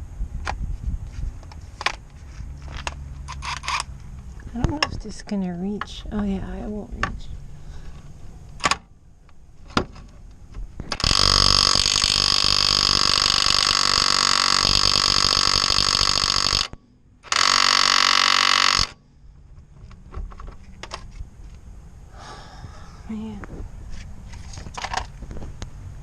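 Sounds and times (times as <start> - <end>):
impact wrench hammering: 10.9 - 19.0.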